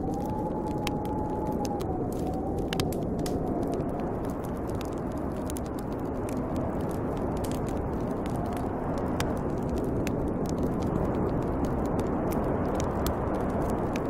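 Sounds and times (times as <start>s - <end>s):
wind blowing with faint whistle: 0.0s - 14.0s
wood fire crackling and popping: 0.0s - 14.0s.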